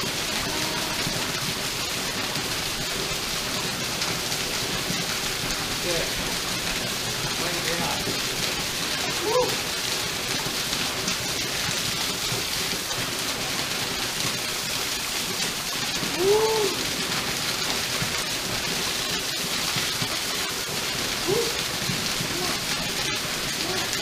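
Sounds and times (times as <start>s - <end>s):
waterfall pouring and splashing: 0.0s - 24.0s
voice-like cries: 0.3s - 1.2s, 9.0s - 9.6s, 16.1s - 16.8s, 21.2s - 21.6s.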